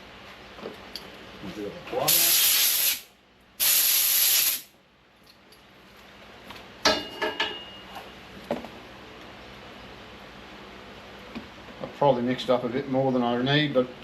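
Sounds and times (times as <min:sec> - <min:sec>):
spray hiss: 0:02.1 - 0:04.7.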